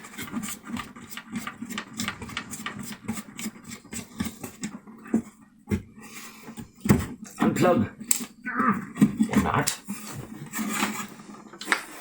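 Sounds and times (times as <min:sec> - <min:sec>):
plastic parts clicking and scraping: 0:00.0 - 0:05.4, 0:06.4 - 0:12.0.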